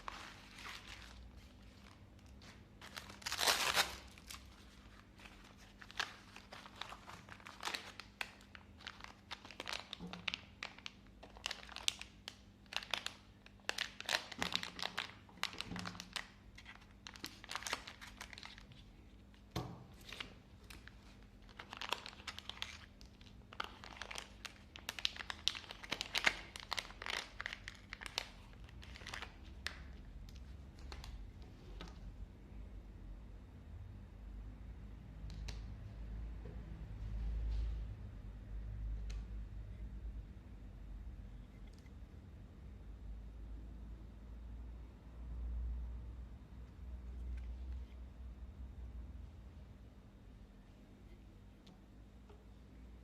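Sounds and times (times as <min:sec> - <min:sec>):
packaging crinkling and tearing: 0:00.0 - 0:19.3, 0:20.0 - 0:31.2.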